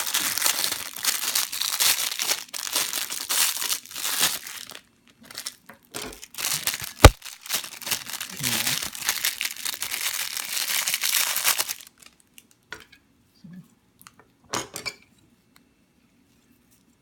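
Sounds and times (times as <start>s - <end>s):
plastic packaging crinkling: 0.0s - 12.6s.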